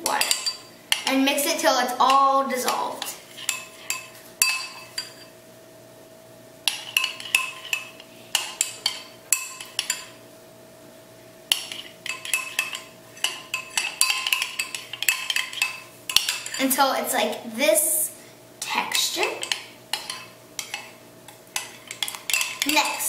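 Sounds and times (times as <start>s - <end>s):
utensil clinking against bowl: 0.1s - 1.2s, 2.1s - 5.3s, 6.7s - 10.2s, 11.5s - 16.7s, 19.4s - 23.0s.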